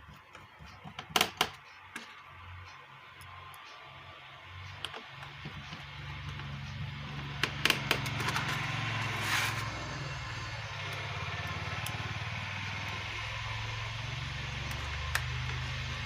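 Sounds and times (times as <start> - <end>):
low engine-like rumble: 2.4 - 16.0.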